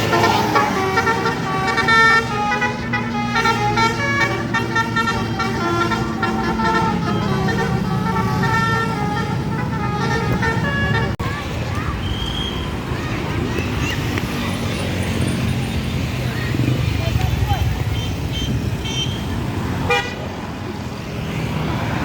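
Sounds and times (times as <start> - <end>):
musical air horn playing a tune: 0.0 - 11.2.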